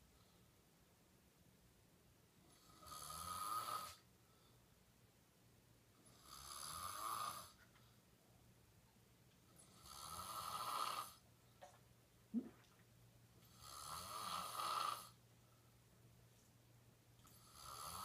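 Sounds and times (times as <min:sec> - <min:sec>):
girl snoring: 0:09.7 - 0:11.2, 0:13.5 - 0:15.2, 0:17.4 - 0:18.0.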